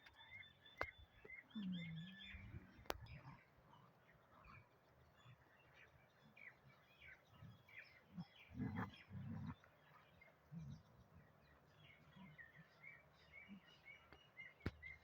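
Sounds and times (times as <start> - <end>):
faint birds chirping: 0.0 - 15.0.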